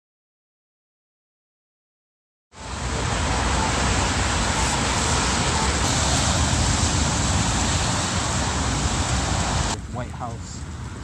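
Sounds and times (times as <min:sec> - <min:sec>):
road traffic rumble: 0:02.5 - 0:11.0.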